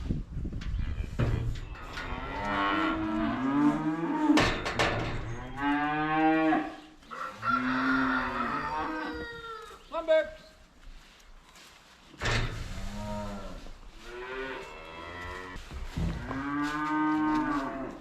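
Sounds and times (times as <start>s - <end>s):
cows mooing: 0.8s - 9.3s, 12.8s - 15.6s, 16.2s - 18.0s.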